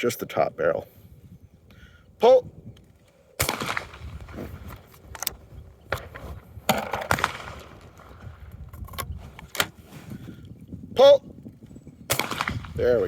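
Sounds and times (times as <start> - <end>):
shotgun firing: 3.4 - 4.4, 5.9 - 8.1, 12.1 - 13.0.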